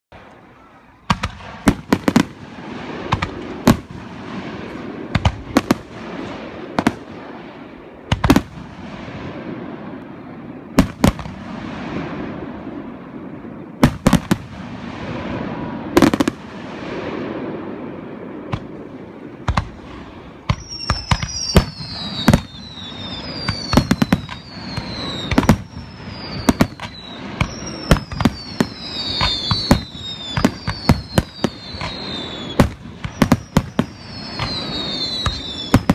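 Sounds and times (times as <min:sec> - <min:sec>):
falling firework whistles: 0:20.3 - 0:35.9.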